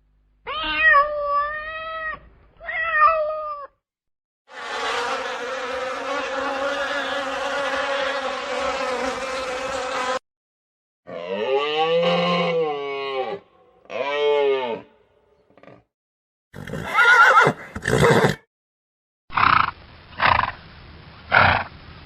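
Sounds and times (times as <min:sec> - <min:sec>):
horse neighing: 0:16.6 - 0:18.4.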